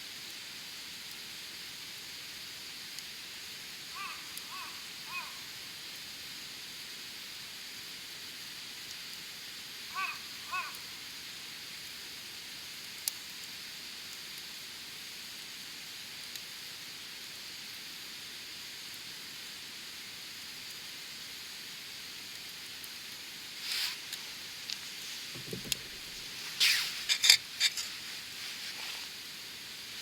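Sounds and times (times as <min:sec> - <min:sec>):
campfire hissing: 0:00.0 - 0:30.0
bird calling: 0:04.0 - 0:05.4, 0:09.9 - 0:10.8
fire crackle: 0:11.3 - 0:16.6, 0:20.0 - 0:30.0.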